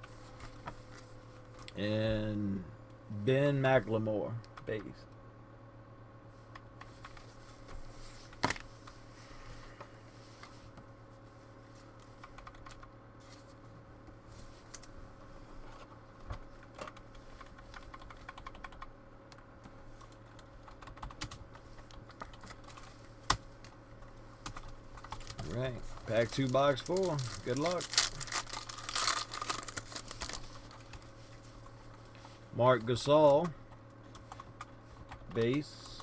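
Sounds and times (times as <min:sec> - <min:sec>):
steady low hum: 0:00.0 - 0:36.0
trading cards clicking and tapping: 0:35.1 - 0:36.0.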